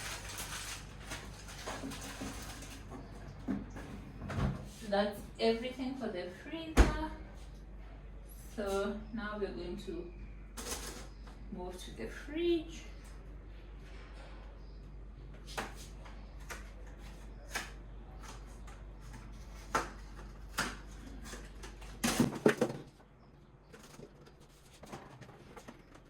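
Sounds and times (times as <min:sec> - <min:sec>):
groceries being handled: 0:00.0 - 0:04.2, 0:10.5 - 0:11.2, 0:15.4 - 0:26.0
low steady hum: 0:00.0 - 0:26.0.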